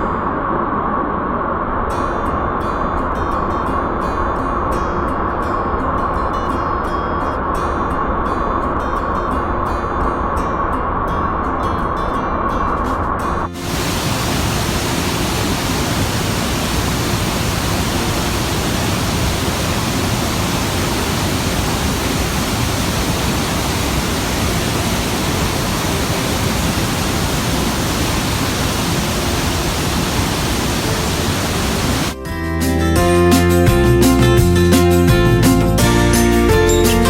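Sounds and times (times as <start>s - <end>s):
waterfall roaring: 13.6s - 32.2s.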